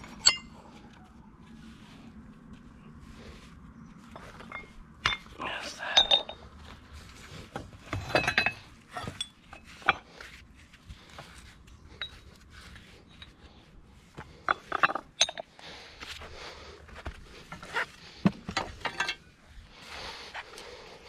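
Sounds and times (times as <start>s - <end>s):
metal objects clinking: 0.0s - 0.6s, 4.1s - 6.5s, 7.9s - 10.1s, 14.4s - 15.6s.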